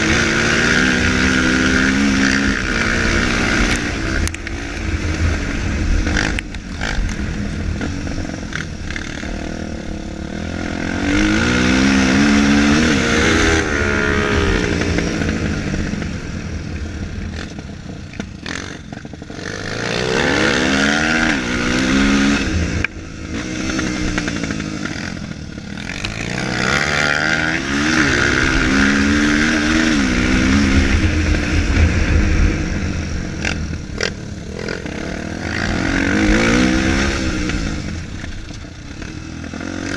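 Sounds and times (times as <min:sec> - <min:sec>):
dirt bike engine revving: 0:00.0 - 0:39.9
heavy low rumble: 0:28.3 - 0:38.9.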